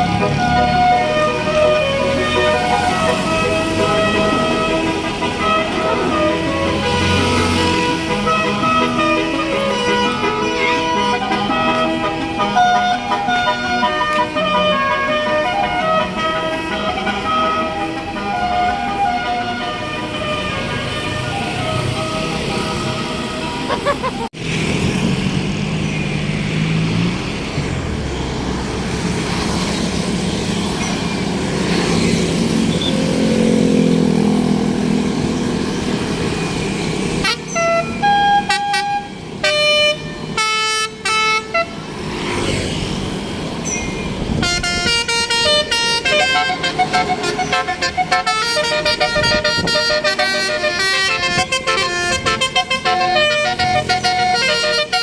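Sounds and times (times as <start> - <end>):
musical air horn melody: 0.0 - 23.7, 37.2 - 41.9, 44.3 - 55.0
bus engine revving: 0.0 - 40.5, 41.4 - 55.0.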